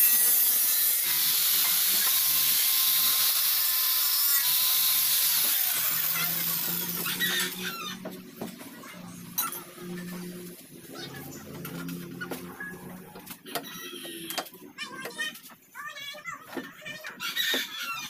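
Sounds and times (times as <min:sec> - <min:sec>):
power tool whine: 0:00.0 - 0:08.1.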